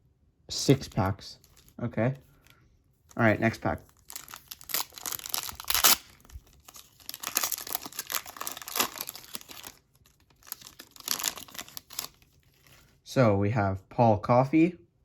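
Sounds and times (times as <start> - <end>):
card pack wrapper tearing: 0.6 - 1.8, 3.1 - 12.8.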